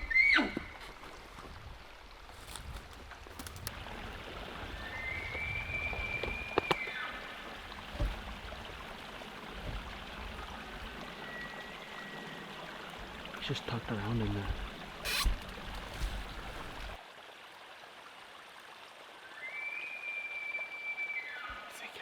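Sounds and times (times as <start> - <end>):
elk bugling whistle: 15.0 - 15.4
faint short whistle: 19.4 - 21.7.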